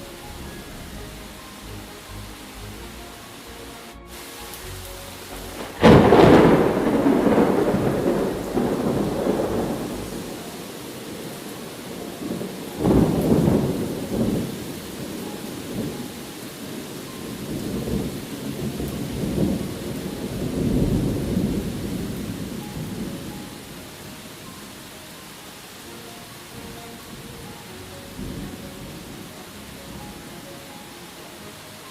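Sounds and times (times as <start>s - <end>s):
steady rain: 0.0s - 31.9s
thunder: 5.5s - 23.8s.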